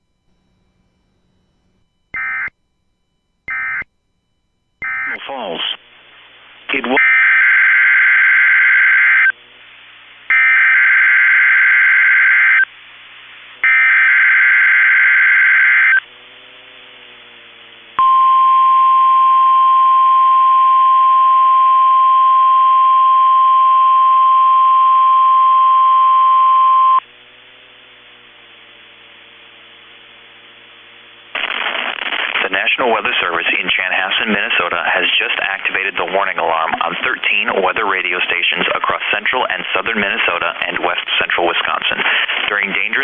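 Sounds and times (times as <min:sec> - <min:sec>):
steady high alarm tone: 0:00.1 - 0:02.6, 0:03.5 - 0:03.9, 0:04.8 - 0:05.3, 0:07.0 - 0:09.3, 0:10.3 - 0:12.7, 0:13.6 - 0:16.1, 0:18.0 - 0:27.0
digital data bursts: 0:31.3 - 0:33.3.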